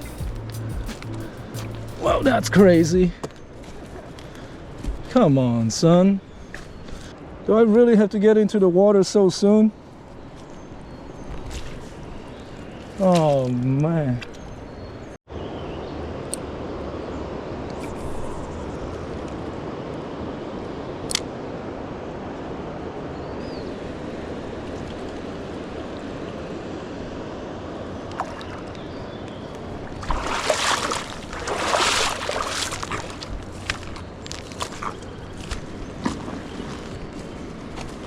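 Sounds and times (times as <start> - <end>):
loud water splashing: 0.0 - 3.0, 29.7 - 34.1
river rushing: 0.0 - 3.1, 29.6 - 38.0.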